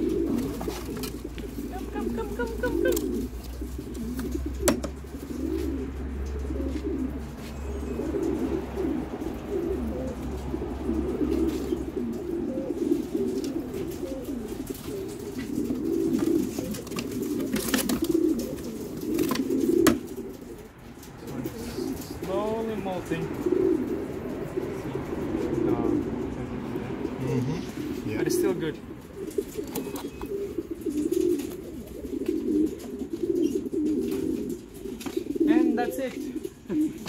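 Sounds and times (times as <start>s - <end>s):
pigeons cooing: 0.0s - 37.0s
sharp knocks: 4.6s - 5.0s.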